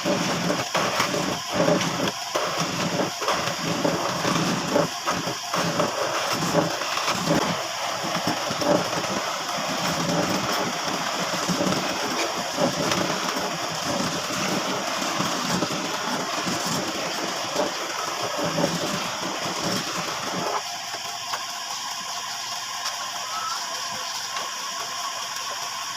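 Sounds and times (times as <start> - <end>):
power tool boring into wood: 0.0 - 20.6.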